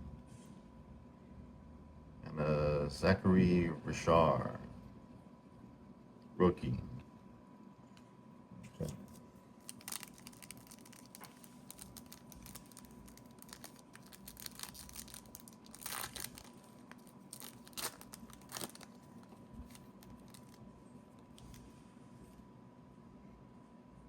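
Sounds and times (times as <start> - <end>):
wrapper ripping: 9.0 - 21.6
wrapper crackling and rustling: 9.0 - 21.7.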